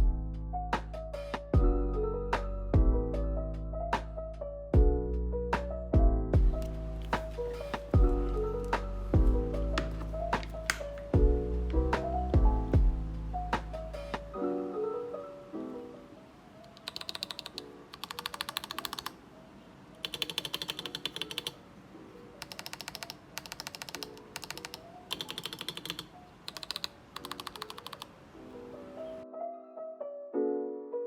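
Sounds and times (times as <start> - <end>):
mechanical keyboard typing: 16.6 - 19.2, 20.0 - 21.7, 22.4 - 28.2.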